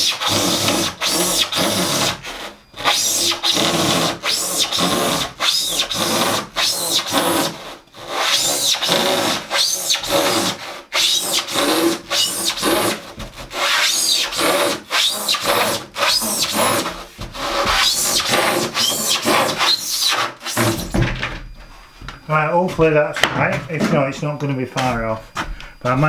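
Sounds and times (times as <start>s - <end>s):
handsaw cutting wood: 0.0s - 21.2s.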